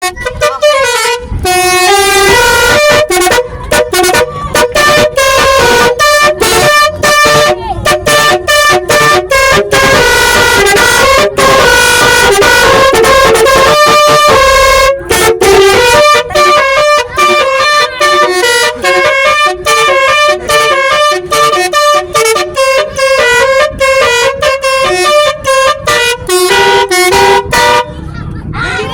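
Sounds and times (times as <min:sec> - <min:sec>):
musical vehicle horn melody: 0:00.0 - 0:28.1.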